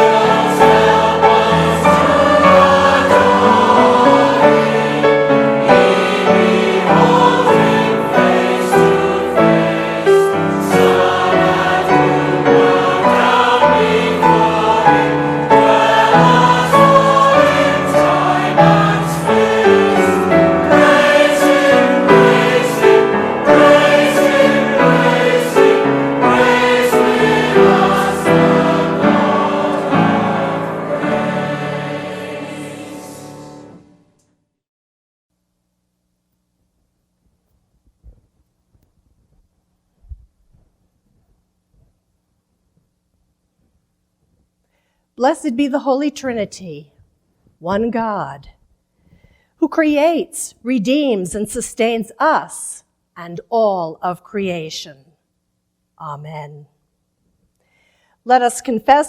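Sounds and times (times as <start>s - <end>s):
choir singing: 0.0s - 34.1s.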